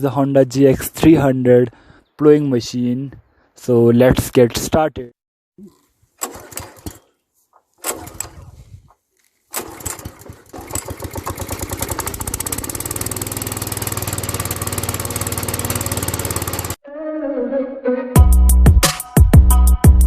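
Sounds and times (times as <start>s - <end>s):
petrol engine pull-started and running: 6.2s - 7.2s, 7.8s - 8.9s, 9.5s - 16.8s.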